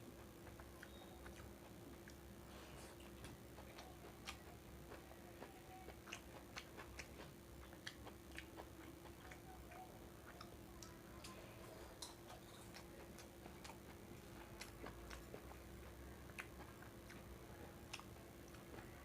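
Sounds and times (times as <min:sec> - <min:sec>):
faint steady hum: 0:00.0 - 0:19.0
chewing clicks: 0:00.2 - 0:02.2, 0:02.9 - 0:11.4, 0:17.9 - 0:18.9.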